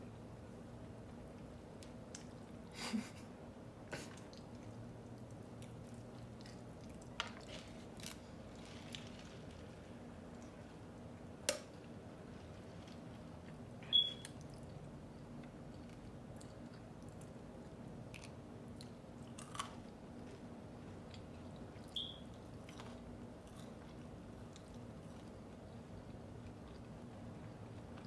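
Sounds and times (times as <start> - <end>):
eating clicks and squishes: 4.2 - 9.6.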